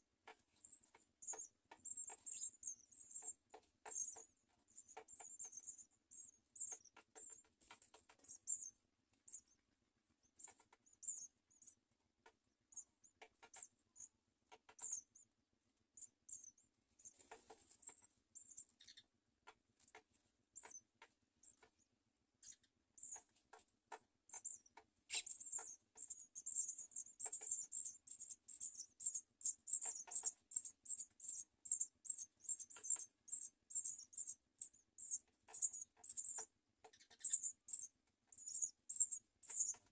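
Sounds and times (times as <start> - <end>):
taps and scratches in nest: 0.2 - 9.6, 10.2 - 11.6, 12.2 - 15.2, 16.4 - 39.9
nestlings cheeping: 24.3 - 39.9.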